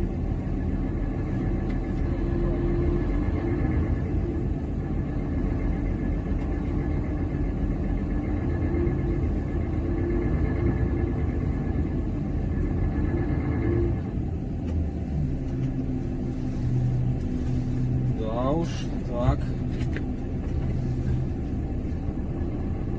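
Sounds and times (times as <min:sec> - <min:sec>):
truck diesel engine revving: 0:00.0 - 0:14.2.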